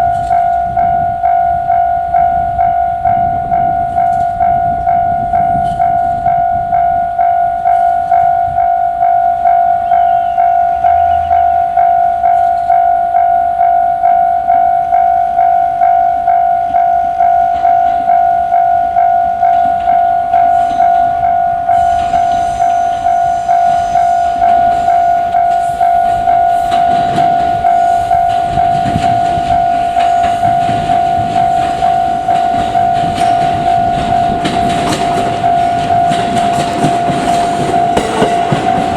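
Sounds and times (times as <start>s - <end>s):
level-crossing bell ringing: 0.0s - 38.9s
train wheels clattering over rails: 17.2s - 38.9s.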